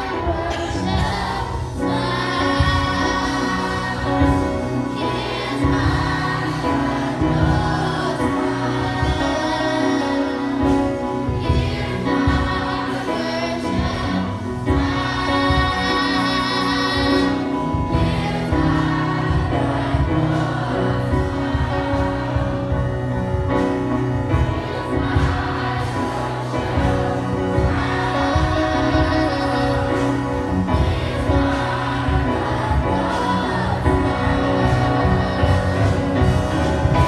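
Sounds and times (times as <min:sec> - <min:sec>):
choir singing gospel: 0:00.0 - 0:37.0.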